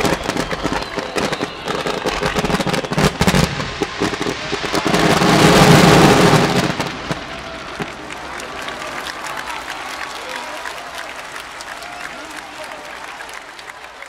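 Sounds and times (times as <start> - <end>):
firework bangs: 0.0 - 8.9
firework crackling: 0.0 - 10.0.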